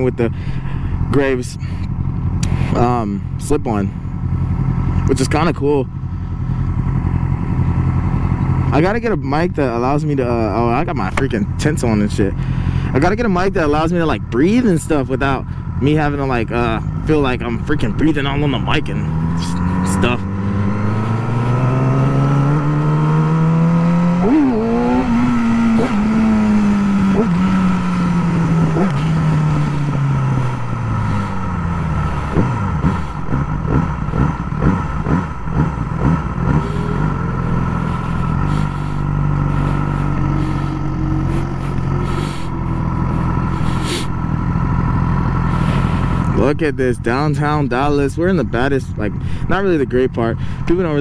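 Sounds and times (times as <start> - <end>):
motorcycle engine revving: 0.0 - 51.0
exhaust pops: 10.9 - 11.8, 24.1 - 40.1.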